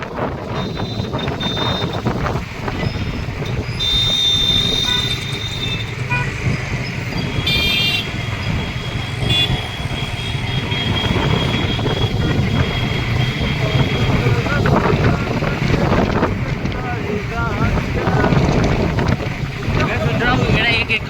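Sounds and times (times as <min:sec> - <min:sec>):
motorbike engine: 0:00.0 - 0:21.0
road and wind noise: 0:00.0 - 0:21.0
vehicle horns honking: 0:00.4 - 0:14.8.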